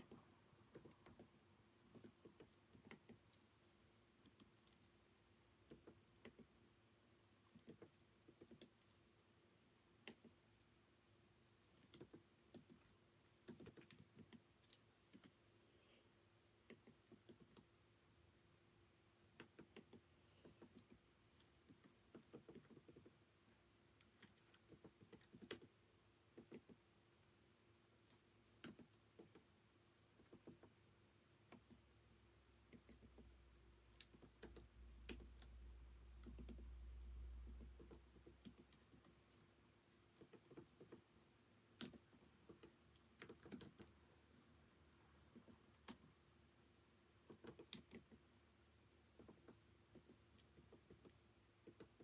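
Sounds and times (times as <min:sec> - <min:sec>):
typing on computer keyboard: 0:00.0 - 0:03.4, 0:05.6 - 0:06.5, 0:07.5 - 0:08.8, 0:11.8 - 0:15.4, 0:16.7 - 0:17.7, 0:19.3 - 0:21.0, 0:21.6 - 0:23.2, 0:24.0 - 0:26.8, 0:28.6 - 0:29.5, 0:30.2 - 0:30.8, 0:32.7 - 0:33.3, 0:34.0 - 0:35.5, 0:36.2 - 0:36.7, 0:37.4 - 0:39.1, 0:40.1 - 0:41.0, 0:41.8 - 0:43.9, 0:47.2 - 0:48.2, 0:49.2 - 0:52.0.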